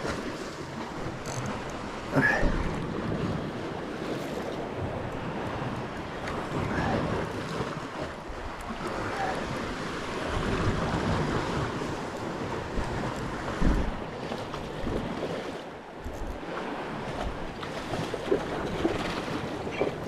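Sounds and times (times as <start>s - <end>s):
wind gusting on microphone: 1.0s - 20.0s
waves washing on rocky shore: 1.9s - 15.6s.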